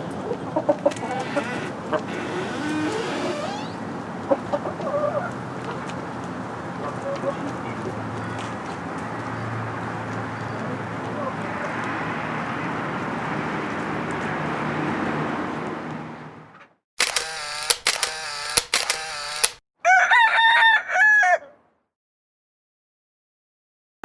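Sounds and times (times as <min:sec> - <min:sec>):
rooster crowing: 0:19.8 - 0:21.6.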